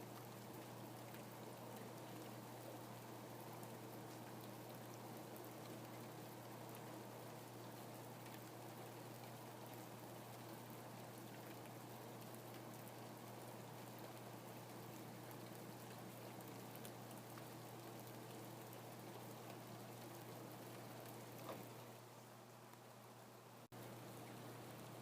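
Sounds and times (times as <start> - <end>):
faint steady rainfall: 0.0 - 25.0.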